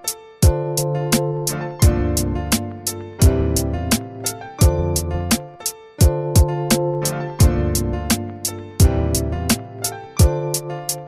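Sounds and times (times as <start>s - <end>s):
drum hits: 6.0s - 6.6s.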